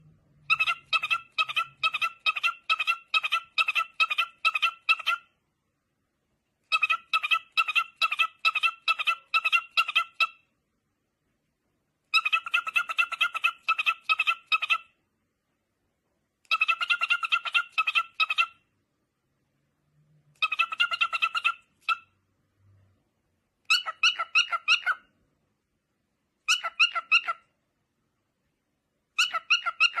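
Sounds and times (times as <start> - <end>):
parrot calling: 0.4 - 5.4, 6.6 - 10.5, 12.1 - 15.0, 16.4 - 18.7, 20.3 - 22.2, 23.6 - 25.1, 26.4 - 27.6, 29.1 - 30.0.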